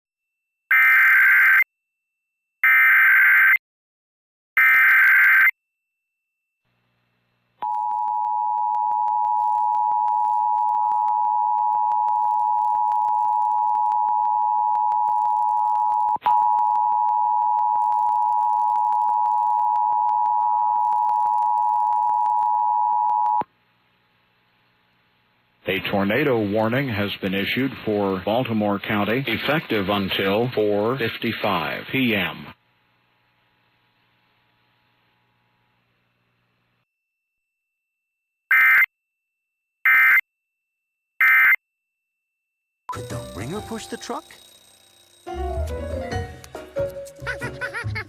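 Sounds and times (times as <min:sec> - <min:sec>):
warbling data tones: 0:43.3 - 0:45.4.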